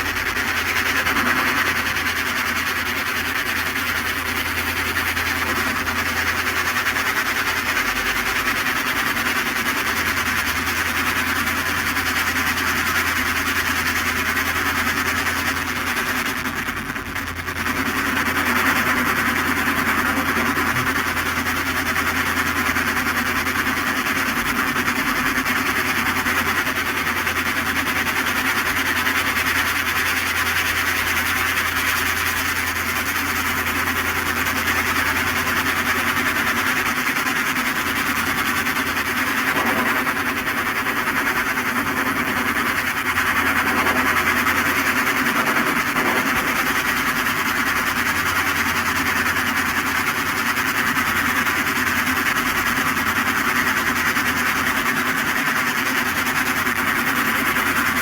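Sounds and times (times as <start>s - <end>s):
machine drone: 0.0s - 54.8s.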